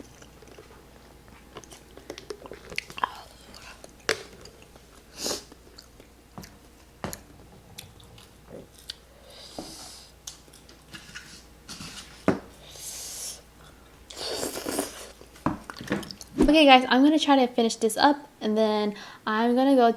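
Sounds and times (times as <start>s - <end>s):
close-up chewing: 0.0s - 9.1s
breathy hisses: 9.1s - 10.2s, 12.6s - 13.5s.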